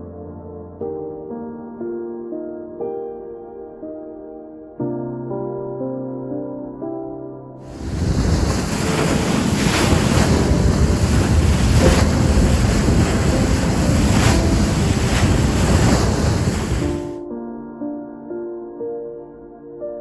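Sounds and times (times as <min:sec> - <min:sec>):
rushing water: 0:07.7 - 0:17.2
wind buffeting microphone: 0:07.7 - 0:17.2.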